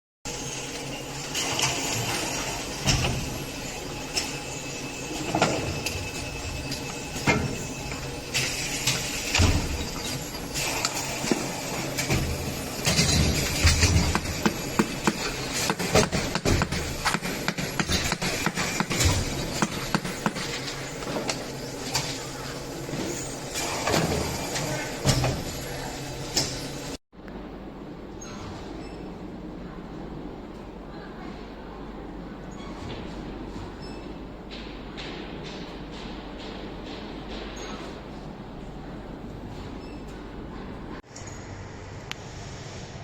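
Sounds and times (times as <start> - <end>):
mechanical clatter: 0.6 - 22.2.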